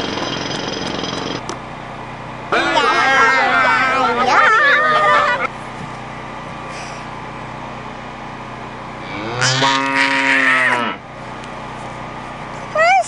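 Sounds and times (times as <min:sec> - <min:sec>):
cow mooing: 0:09.0 - 0:11.0.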